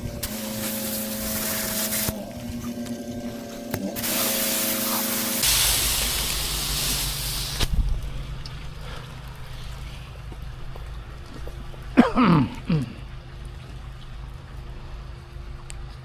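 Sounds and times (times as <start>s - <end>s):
pressure washer spray hissing: 0.0s - 2.2s, 4.0s - 7.7s
low machine hum: 0.0s - 16.0s.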